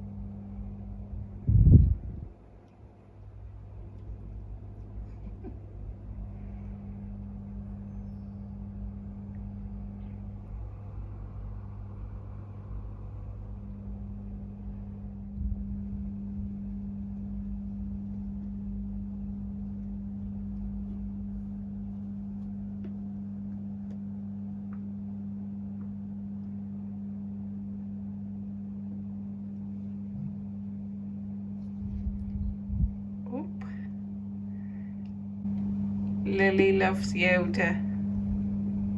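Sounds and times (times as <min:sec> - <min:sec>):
low rumble: 0:00.0 - 0:22.8, 0:31.5 - 0:38.9
steady low hum: 0:00.0 - 0:38.9.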